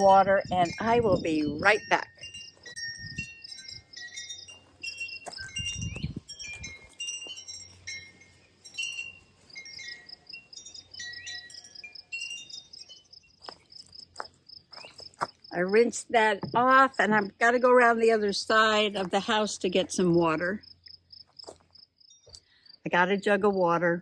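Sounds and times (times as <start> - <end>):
wind chimes ringing: 0.0 - 14.2
crickets chirping: 0.6 - 22.9.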